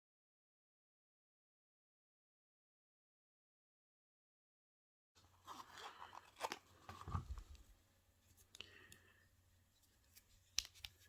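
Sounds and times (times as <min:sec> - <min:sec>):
soft rustling: 0:05.2 - 0:08.9.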